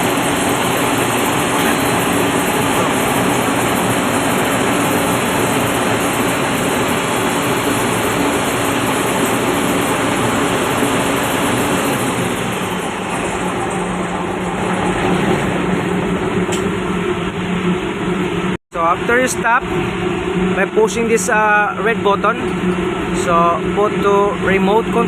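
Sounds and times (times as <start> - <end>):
diesel generator engine running: 0.0 - 25.0.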